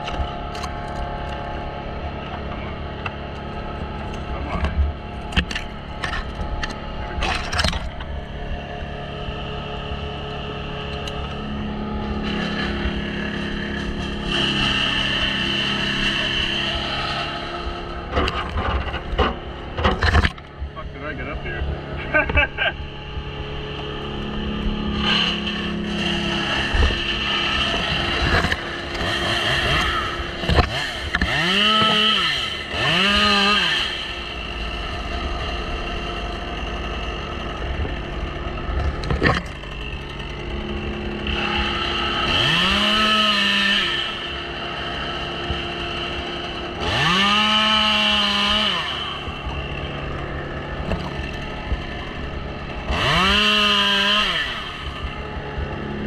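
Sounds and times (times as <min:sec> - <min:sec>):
chainsaw idling and revving: 0:00.0 - 0:56.0.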